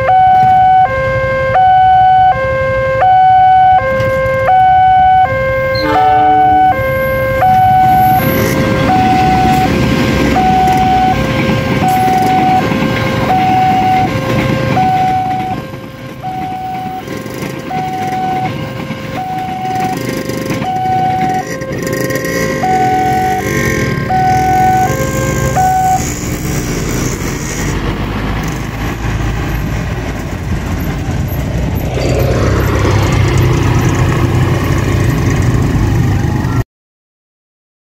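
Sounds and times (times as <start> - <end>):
level crossing alarm: 0.0 - 26.1
vehicle engine: 0.0 - 36.6.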